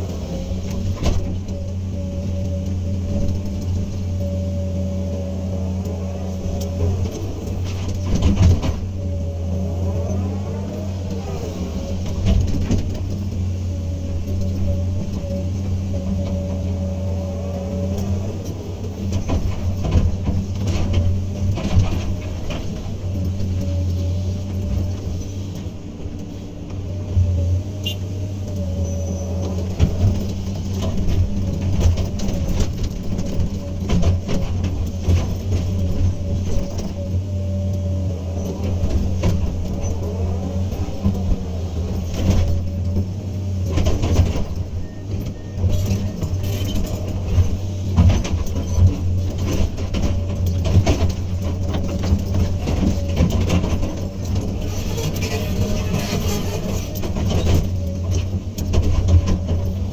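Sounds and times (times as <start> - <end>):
excavator diesel engine running: 0.0 - 59.9
hydraulic whine: 0.0 - 59.9
knocks and rattles: 38.4 - 59.9.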